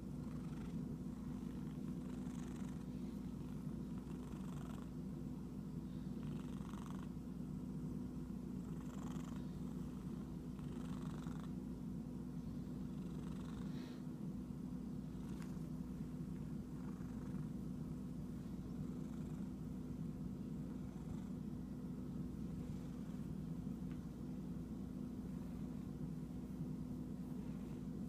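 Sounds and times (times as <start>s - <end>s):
cat purring: 0.0s - 28.0s.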